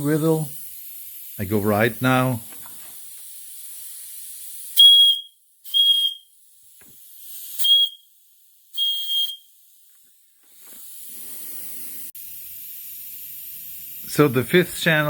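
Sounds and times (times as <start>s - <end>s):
steam hissing: 0.0s - 15.0s
steam whistle toots: 4.8s - 6.3s, 7.6s - 8.1s, 8.8s - 9.5s.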